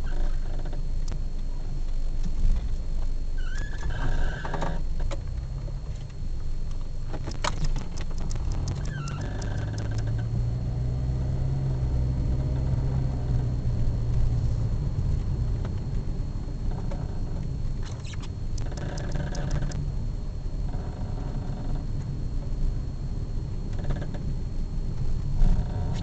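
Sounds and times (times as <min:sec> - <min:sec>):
car cabin low rumble: 0:00.0 - 0:26.0
quick run of clicks: 0:07.2 - 0:10.1.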